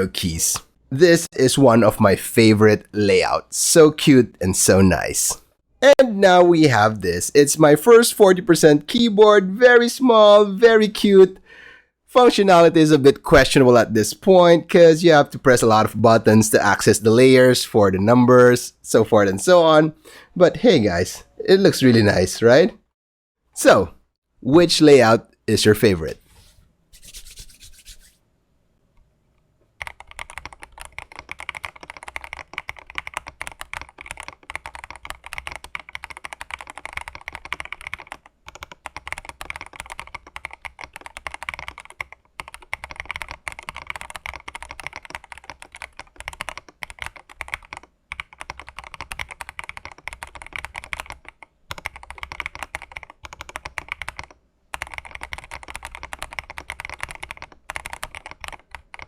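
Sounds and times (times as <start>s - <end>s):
mechanical keyboard typing: 29.8s - 59.0s.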